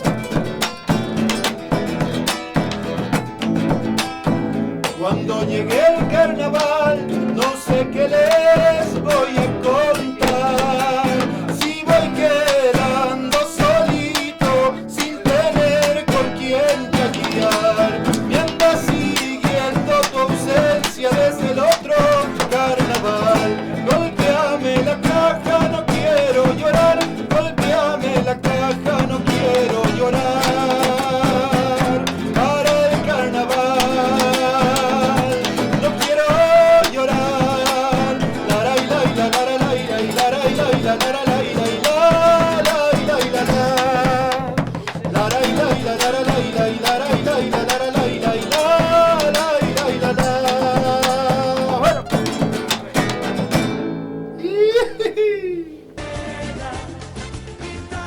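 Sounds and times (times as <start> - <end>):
strummed acoustic guitar: 0.0 - 58.0.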